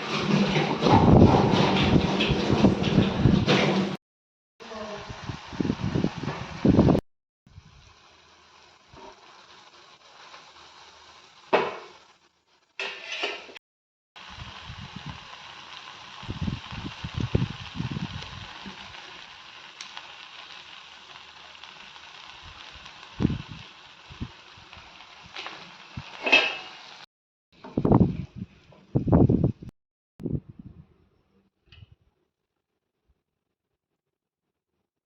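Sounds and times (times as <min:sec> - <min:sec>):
noodles bubbling and sizzling: 0:00.0 - 0:04.0, 0:04.6 - 0:13.6, 0:14.2 - 0:27.1.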